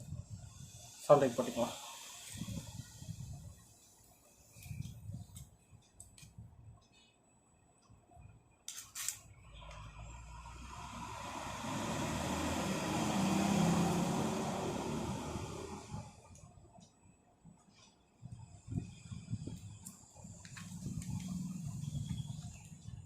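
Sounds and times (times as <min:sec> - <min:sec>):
road vehicle passing by: 0:09.5 - 0:16.3, 0:20.6 - 0:23.0.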